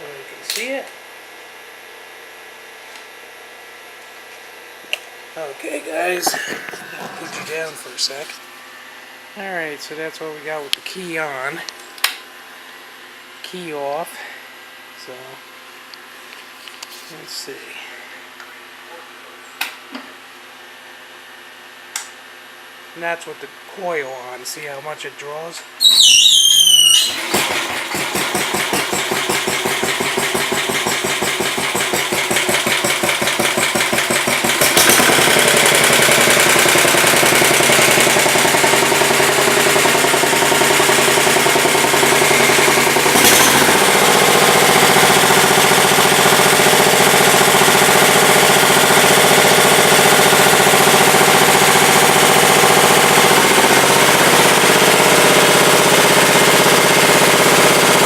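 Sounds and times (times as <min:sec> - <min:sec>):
garden tractor engine chugging: 0:26.7 - 0:58.0.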